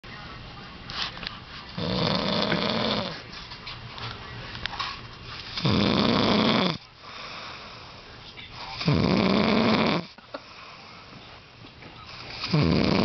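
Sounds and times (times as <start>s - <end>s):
man snoring heavily: 1.8s - 3.1s, 5.6s - 7.3s, 8.8s - 10.1s, 12.4s - 13.0s
quiet breathing: 6.8s - 9.1s, 10.0s - 13.0s.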